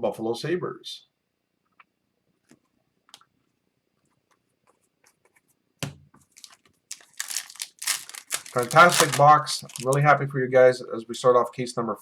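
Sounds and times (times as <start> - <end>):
trading cards rustling and clicking: 6.4 - 10.2.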